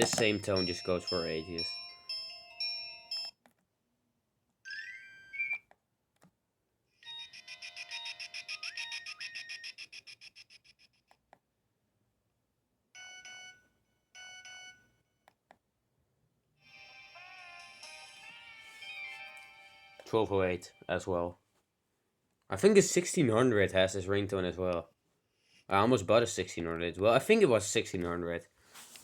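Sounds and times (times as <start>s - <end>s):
mobile phone ringtones: 0.0s - 3.4s, 4.7s - 5.6s, 7.0s - 10.6s, 13.0s - 15.1s.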